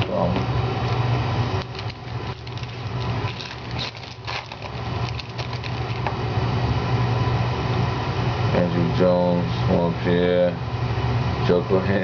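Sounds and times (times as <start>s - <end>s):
trading cards rustling: 1.6s - 6.1s.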